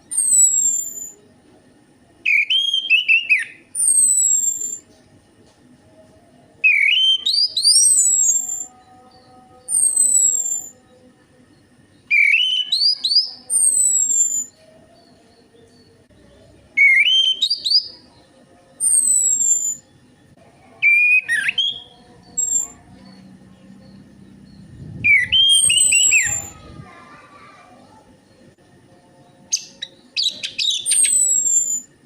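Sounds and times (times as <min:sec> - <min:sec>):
thrush song with whistled phrases: 0:06.6 - 0:08.7, 0:12.1 - 0:14.5, 0:16.8 - 0:17.9, 0:25.0 - 0:26.6.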